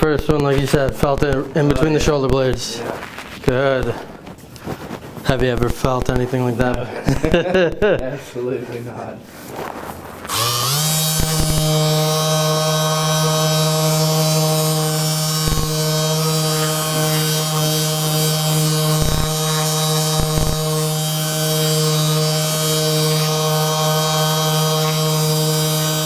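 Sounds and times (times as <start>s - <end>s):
small electric motor buzzing: 10.2s - 26.0s.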